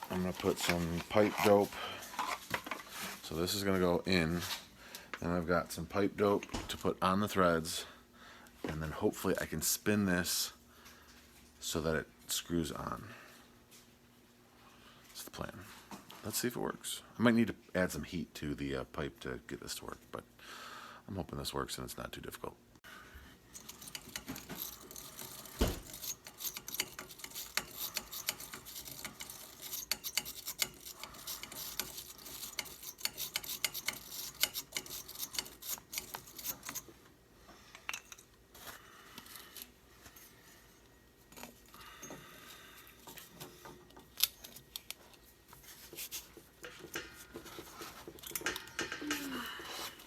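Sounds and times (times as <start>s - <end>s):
pipe fitting clicking and scraping: 23.6s - 36.9s, 45.9s - 50.0s.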